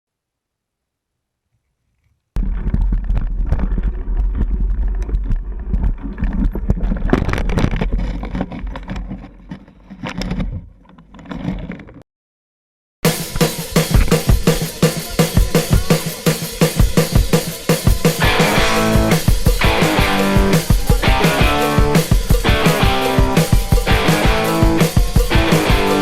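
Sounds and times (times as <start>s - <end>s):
wind rumble on microphone: 2.4s - 8.8s
bike rattling and knocking: 2.4s - 11.6s.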